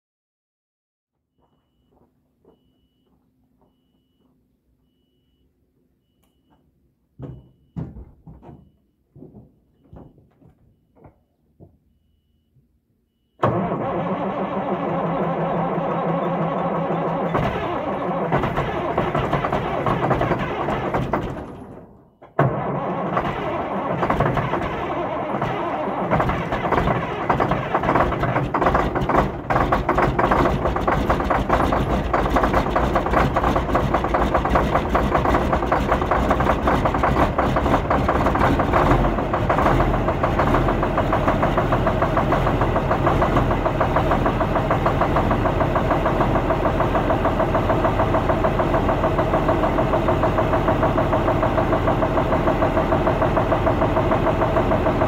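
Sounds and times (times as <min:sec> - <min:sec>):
farm engine running with knocking: 0:13.4 - 0:55.0.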